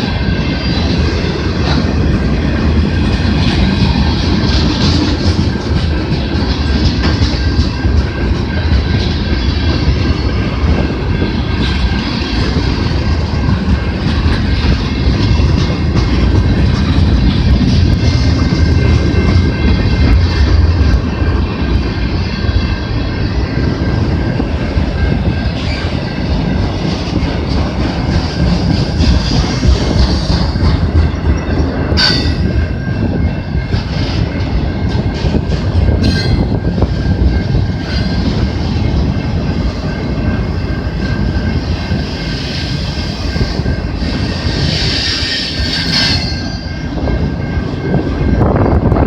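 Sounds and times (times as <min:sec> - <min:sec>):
train rumble: 0:00.0 - 0:49.0
train wheels clacking over rail joints: 0:00.8 - 0:22.6, 0:23.5 - 0:49.0
faint high wheel squeal: 0:42.2 - 0:46.8.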